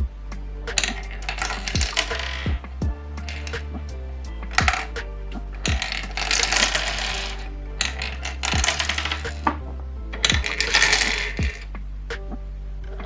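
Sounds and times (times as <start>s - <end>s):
hip-hop music with steady beat: 0.0s - 13.0s
plastic game pieces clattering: 0.8s - 2.5s, 3.3s - 3.5s, 5.6s - 9.5s, 10.2s - 11.7s.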